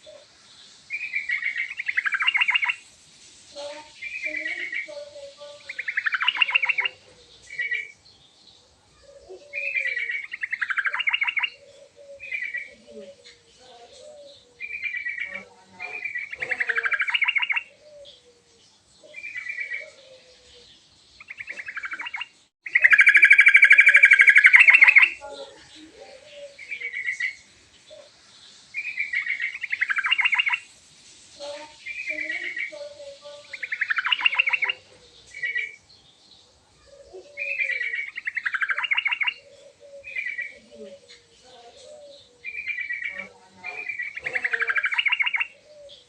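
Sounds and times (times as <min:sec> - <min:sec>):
bulbul singing bubbly phrases: 0:01.0 - 0:02.8, 0:03.5 - 0:07.9, 0:09.4 - 0:14.0, 0:14.7 - 0:18.2, 0:21.2 - 0:27.4, 0:28.8 - 0:30.7, 0:31.4 - 0:35.8, 0:37.2 - 0:41.9, 0:42.5 - 0:45.6.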